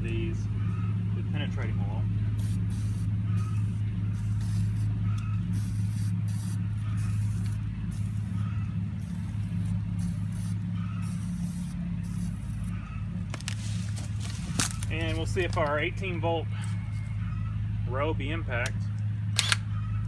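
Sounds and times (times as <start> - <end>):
constant low hum: 0.0 - 20.0
aerosol spray bursts: 2.4 - 4.9, 5.5 - 8.4, 9.0 - 12.7.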